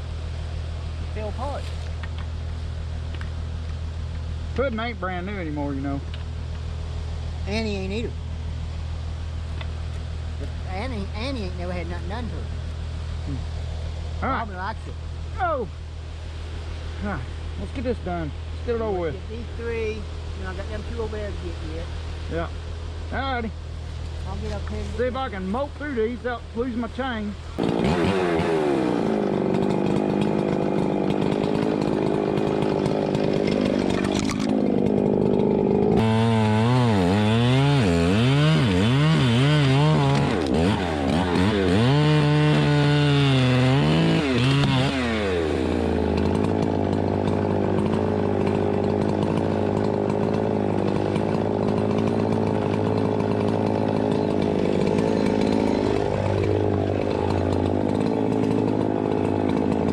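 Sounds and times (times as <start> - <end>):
chainsaw cutting wood: 27.6 - 59.9.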